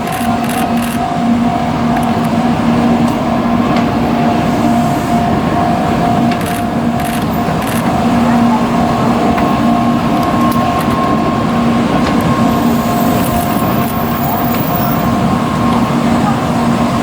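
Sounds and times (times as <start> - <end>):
continuous rushing noise: 0.0 - 17.0
level-crossing warning bell: 0.0 - 17.0.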